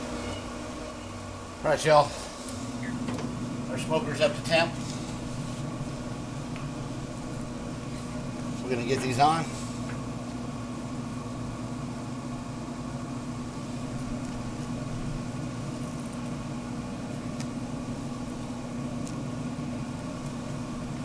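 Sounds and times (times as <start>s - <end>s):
grill fan humming: 0.0s - 21.0s.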